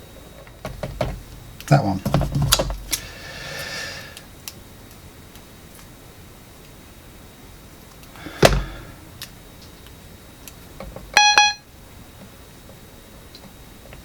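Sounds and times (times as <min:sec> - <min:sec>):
bright electronic keyboard note: 0:11.2 - 0:11.6.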